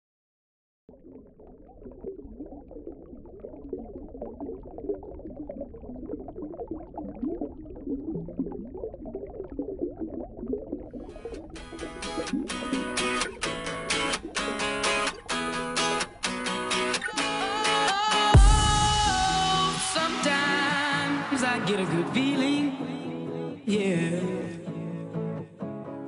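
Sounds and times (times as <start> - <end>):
muffled bubbling water: 0.9 - 17.3
strummed guitar music: 11.2 - 26.0.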